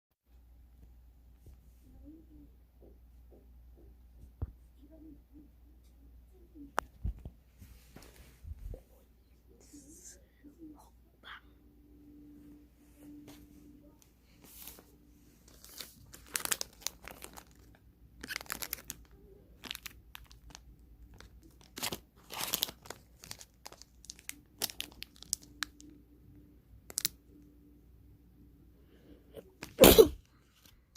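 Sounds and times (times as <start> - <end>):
plastic wrapper crinkling: 15.4 - 26.0, 26.8 - 27.2.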